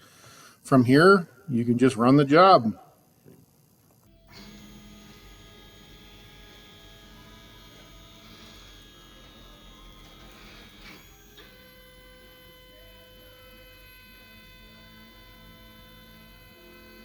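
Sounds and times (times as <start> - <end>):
stepper motors whining: 4.1 - 17.0.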